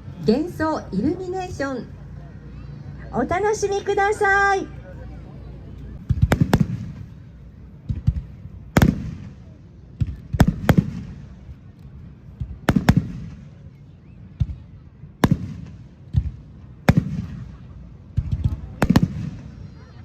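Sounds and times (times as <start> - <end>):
fireworks bangs with rolling echo: 6.0 - 11.6, 12.3 - 13.8, 14.4 - 19.7.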